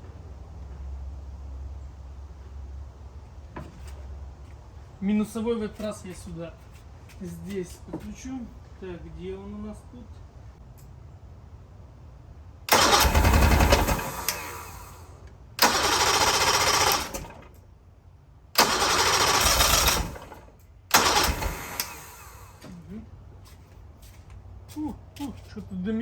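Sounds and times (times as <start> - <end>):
outboard motor starter cranking: 12.7 - 17.6, 18.6 - 22.8.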